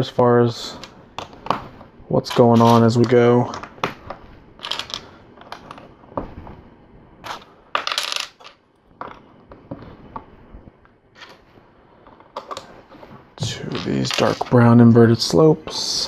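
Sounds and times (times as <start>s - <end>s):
plastic pieces clicking and clattering: 4.6s - 5.8s, 7.3s - 8.6s, 13.7s - 14.6s.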